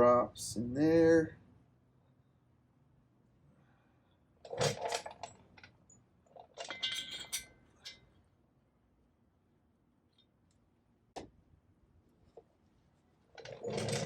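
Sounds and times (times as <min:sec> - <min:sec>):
steel bolts clinking: 0:06.5 - 0:08.1.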